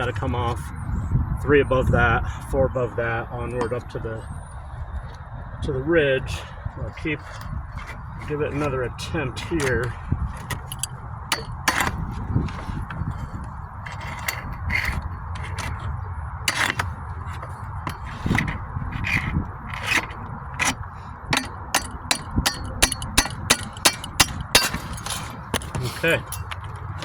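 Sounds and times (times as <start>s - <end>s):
shingle ripper scraping: 3.5s - 3.9s, 6.4s - 26.9s.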